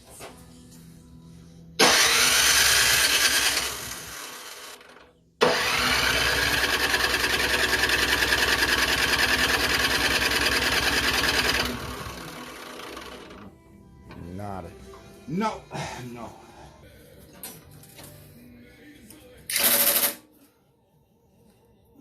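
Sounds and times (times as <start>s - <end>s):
engine cranking by starter: 1.8s - 13.5s.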